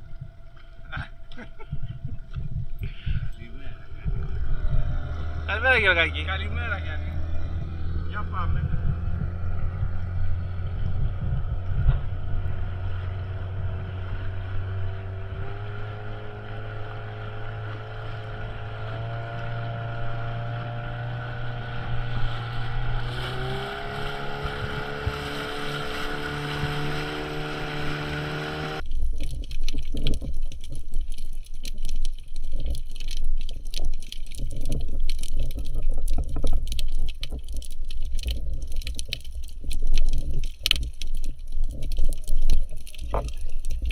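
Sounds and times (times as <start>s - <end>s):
crackly rustling noise: 0.0s - 27.8s, 28.7s - 43.9s
motorboat engine running: 0.0s - 28.8s.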